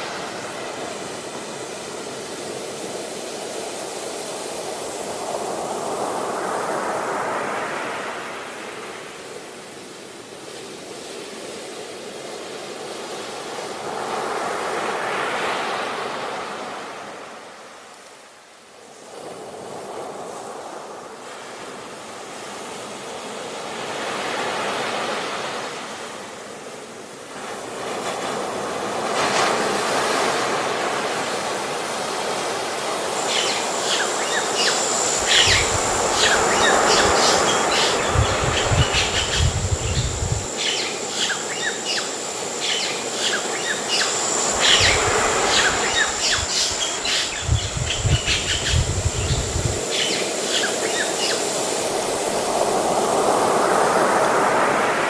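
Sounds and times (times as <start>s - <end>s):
sea surf washing: 0.0s - 17.7s, 19.1s - 55.0s
high-pitched whine: 33.1s - 52.7s
birds chirping: 33.2s - 51.5s.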